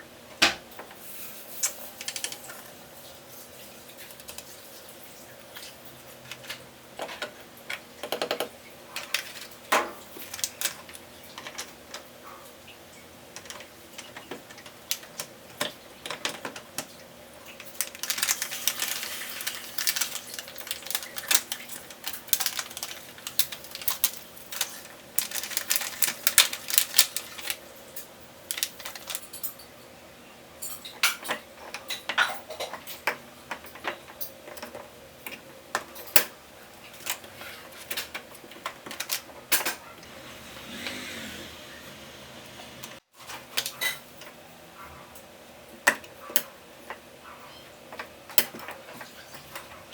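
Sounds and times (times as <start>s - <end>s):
clicks and taps of hard objects: 6.3s - 12.0s.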